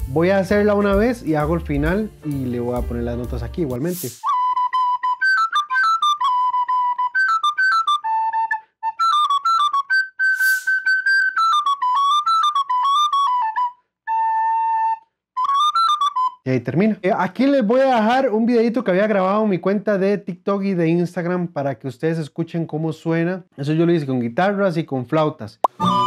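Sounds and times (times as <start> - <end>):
recorder playing a melody: 4.2 - 16.5, 25.7 - 26.0.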